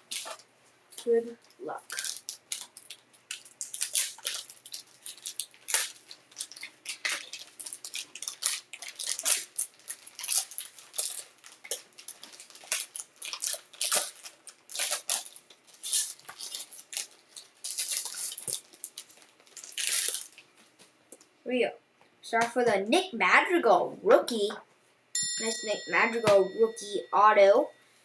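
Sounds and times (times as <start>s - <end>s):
plastic packaging crinkling and tearing: 0.0s - 0.4s, 1.0s - 21.0s.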